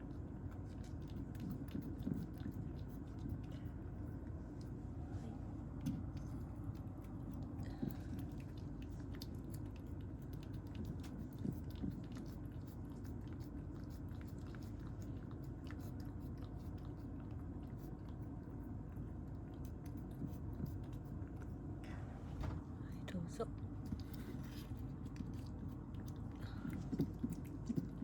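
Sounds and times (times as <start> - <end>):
steady low hum: 0.0 - 28.0
cat crunching dry kibble: 5.6 - 21.8, 23.5 - 28.0.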